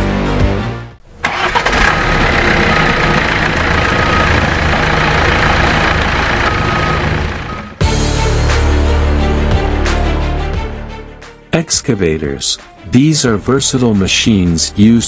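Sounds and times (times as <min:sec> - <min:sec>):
music: 0:00.0 - 0:01.0, 0:07.8 - 0:15.0
excavator diesel engine running: 0:00.0 - 0:11.0.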